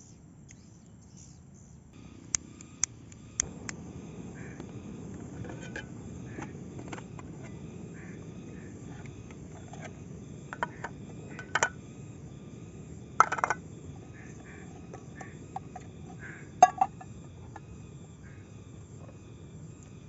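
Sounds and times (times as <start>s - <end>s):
low background hum: 0.0s - 20.0s
camp cookware clinking: 13.2s - 13.6s, 16.6s - 17.6s.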